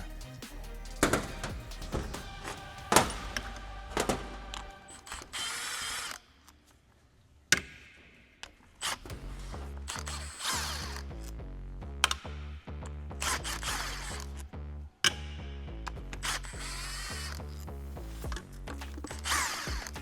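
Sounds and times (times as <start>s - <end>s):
background music: 0.0s - 6.0s, 9.1s - 20.0s
metallic clicks and knocks: 1.0s - 5.3s.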